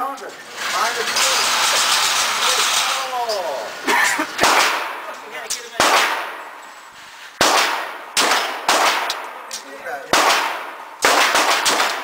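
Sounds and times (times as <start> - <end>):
pistol shots with echo: 4.4 - 5.1, 5.8 - 6.5, 7.4 - 9.5, 10.1 - 12.0.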